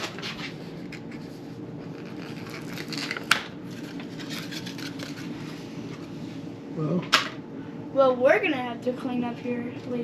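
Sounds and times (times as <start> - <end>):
packaging rustling and scraping: 0.0 - 6.1.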